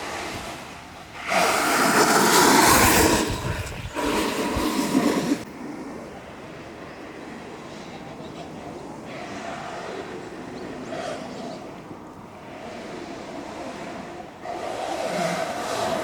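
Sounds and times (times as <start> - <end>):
wind noise on microphone: 0.0 - 16.0
wheels rolling on pavement: 1.2 - 5.8.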